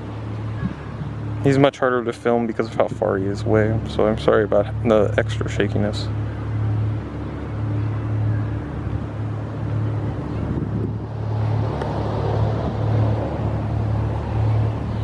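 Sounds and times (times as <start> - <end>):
wind buffeting microphone: 0.0 - 4.8, 6.1 - 15.0.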